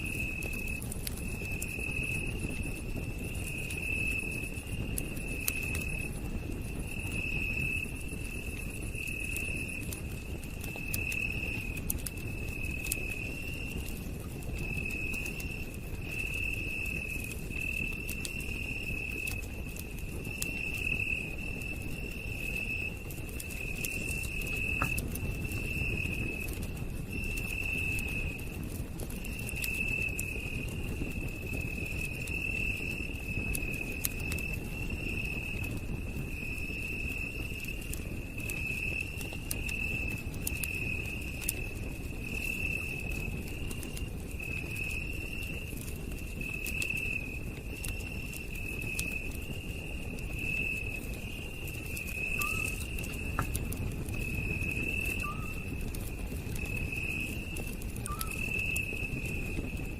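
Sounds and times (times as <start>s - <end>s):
campfire crackling: 0.0s - 59.9s
insect trilling: 52.2s - 53.0s, 54.6s - 55.6s, 58.0s - 58.9s.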